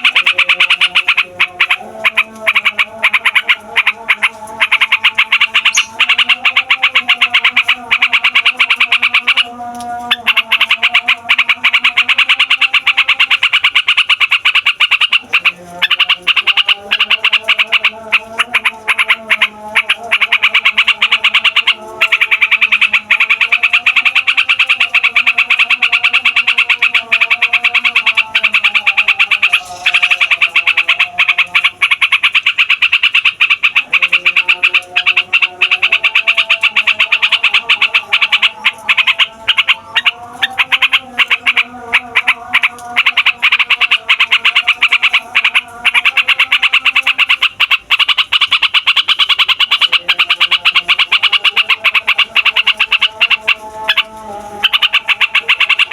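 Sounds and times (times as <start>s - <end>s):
bird singing fast chatter: 0.0s - 55.9s
low warbling notes: 0.1s - 10.3s, 24.9s - 32.0s.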